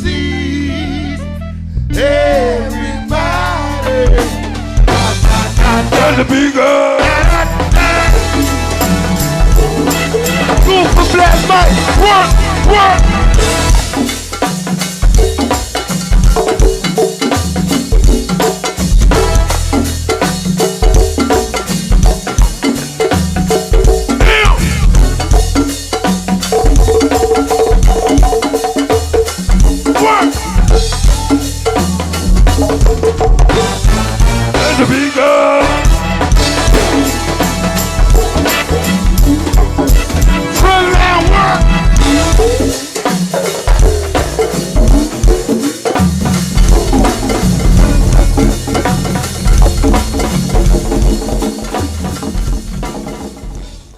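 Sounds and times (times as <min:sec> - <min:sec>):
keyboard chords: 0:00.0 - 0:06.4, 0:07.0 - 0:14.0, 0:35.6 - 0:42.4
live band playing groove: 0:00.0 - 0:53.9
snare drum rimshots: 0:36.4 - 0:38.7.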